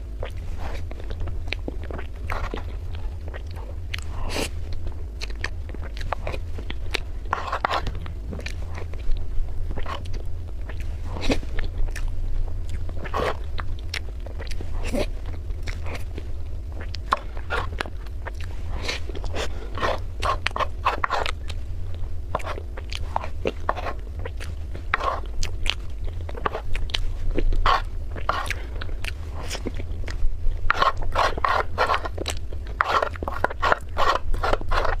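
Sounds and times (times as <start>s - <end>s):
steady low hum: 0.0s - 35.0s
wet chewing mouth clicks: 0.2s - 35.0s.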